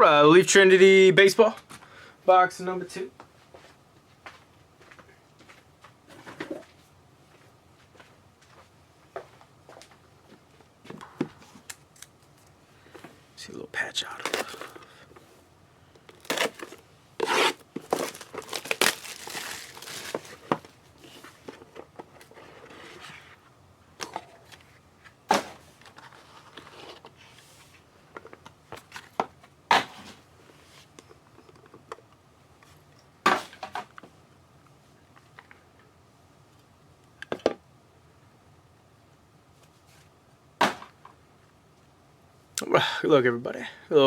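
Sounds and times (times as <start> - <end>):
packaging crinkling: 16.1 - 20.7
packaging tearing: 16.2 - 20.5.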